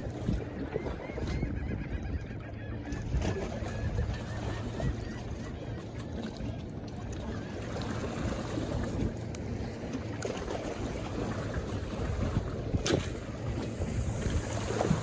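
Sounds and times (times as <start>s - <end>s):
wind buffeting microphone: 0.0s - 5.6s, 6.8s - 15.0s
waves washing along rocks: 7.5s - 15.0s.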